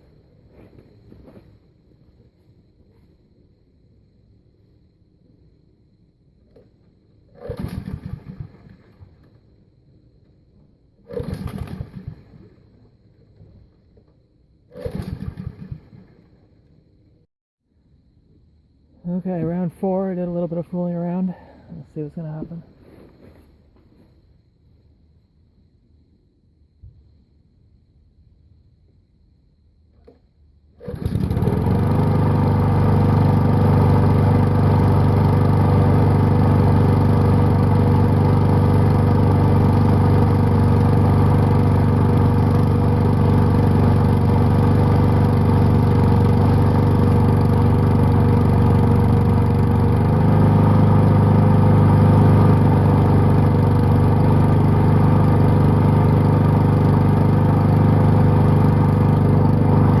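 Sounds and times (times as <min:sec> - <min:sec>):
lawnmower engine starting and running: 0:06.5 - 0:09.5, 0:10.9 - 0:16.5, 0:30.8 - 1:00.0.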